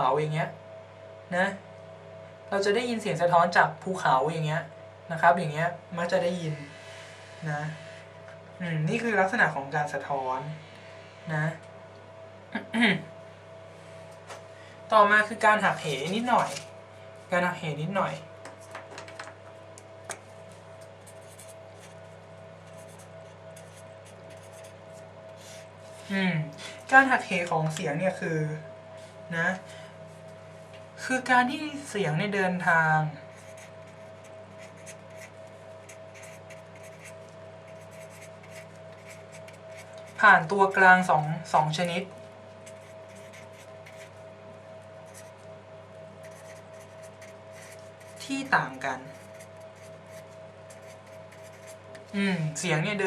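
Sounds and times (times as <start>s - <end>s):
low electrical hum: 0.0s - 53.0s
scratching of writing: 21.0s - 22.0s, 22.7s - 25.7s, 33.3s - 40.2s, 42.6s - 44.2s, 45.1s - 45.4s, 46.2s - 48.3s, 49.0s - 51.8s.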